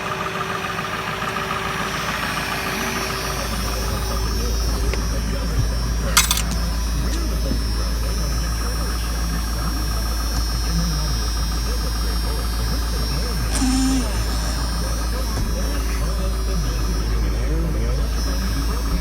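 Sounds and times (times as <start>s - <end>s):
car engine idling: 0.0s - 19.0s.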